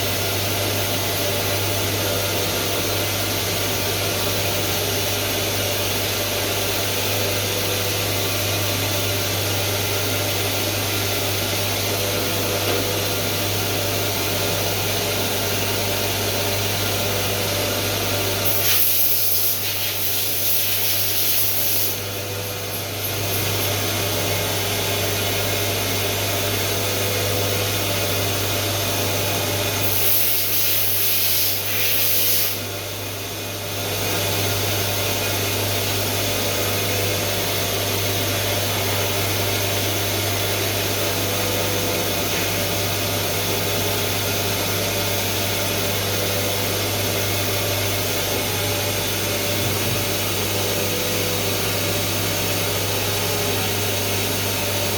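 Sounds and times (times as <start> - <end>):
machine humming and hissing: 0.0 - 54.9
burst of hissing: 18.5 - 22.0.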